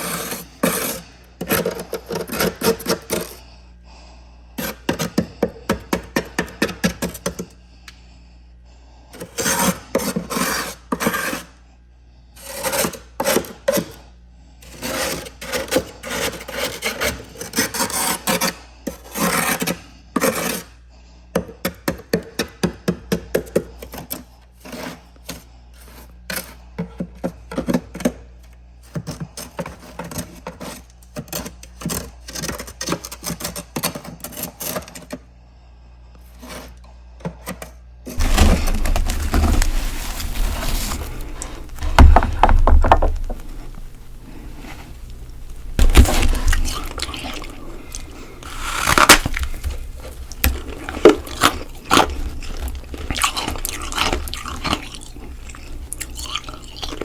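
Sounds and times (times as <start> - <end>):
frost scraping in freezer: 9.2 - 11.5, 14.6 - 20.6, 38.1 - 57.0
steady low hum: 38.2 - 57.0.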